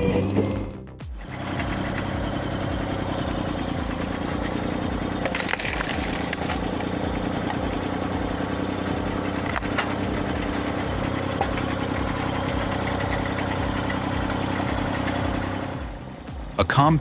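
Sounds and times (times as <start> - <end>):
log splitter engine running: 1.3 - 16.3
wood splitting cracks: 5.2 - 6.9.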